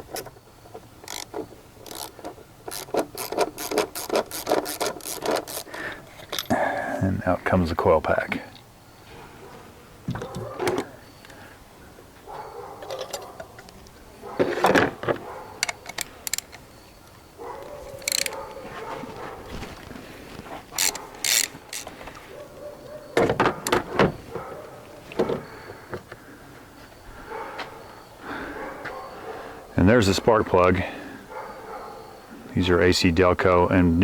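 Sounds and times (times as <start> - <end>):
ratchet clicking and clanking: 0.0 - 6.5, 18.0 - 18.4, 20.8 - 22.0.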